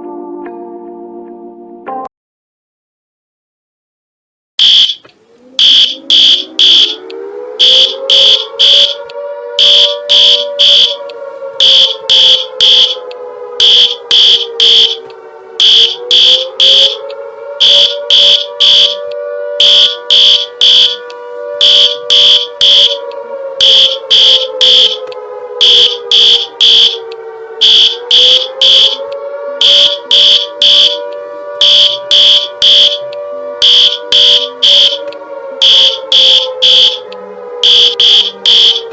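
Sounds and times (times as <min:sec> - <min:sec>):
high-pitched alert beeps: 0:04.6 - 0:07.0, 0:09.6 - 0:11.0, 0:15.6 - 0:17.0, 0:29.6 - 0:31.0, 0:31.6 - 0:33.0, 0:37.6 - 0:38.9
two-note siren: 0:04.6 - 0:38.9.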